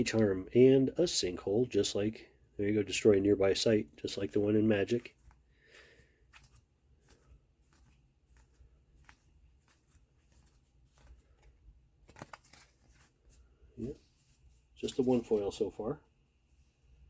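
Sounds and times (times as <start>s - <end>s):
trading cards being handled: 4.0s - 15.8s.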